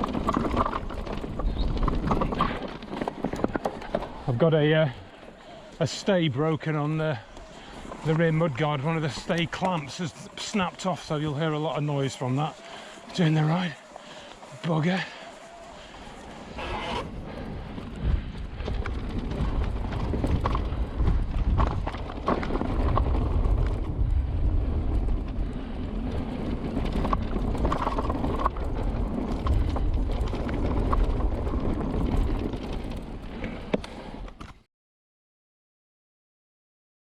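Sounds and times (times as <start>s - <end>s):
bike knocks and rattles: 0.0s - 4.3s, 17.7s - 34.6s
wind buffeting microphone: 0.0s - 4.4s, 6.5s - 33.7s.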